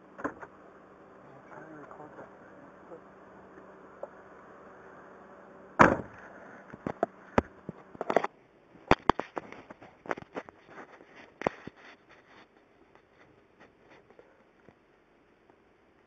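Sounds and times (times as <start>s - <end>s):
low steady hum: 0.0s - 16.0s
loud sharp bang: 5.8s - 6.2s
sharp pops and clicks: 8.9s - 10.6s.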